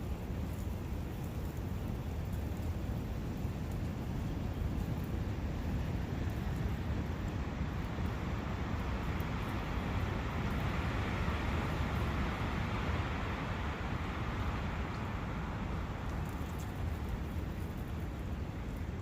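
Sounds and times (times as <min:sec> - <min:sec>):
wind rushing in forest: 0:00.0 - 0:19.0.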